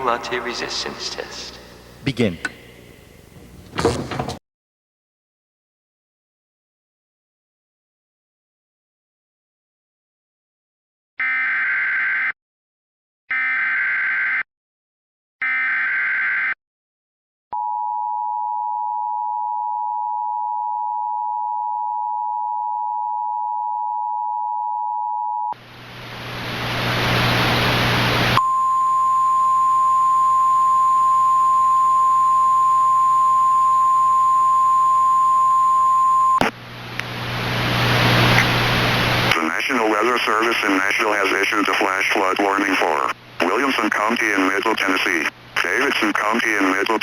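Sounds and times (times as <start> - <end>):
steady weather radio alert tone: 0.0 - 2.2, 27.0 - 36.5, 39.2 - 47.0
radio static: 0.0 - 2.4, 26.2 - 36.6, 37.3 - 47.0
two-tone attention signal: 28.4 - 36.4.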